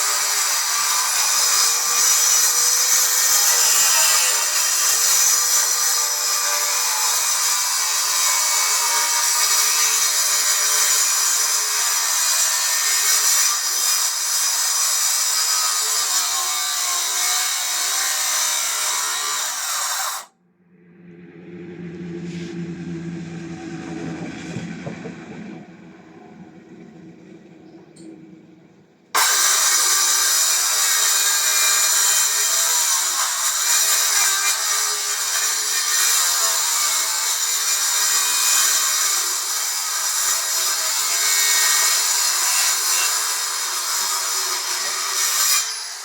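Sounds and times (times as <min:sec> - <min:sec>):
circular saw cutting wood: 0:00.0 - 0:20.3, 0:29.1 - 0:46.0
low hum: 0:20.3 - 0:29.2.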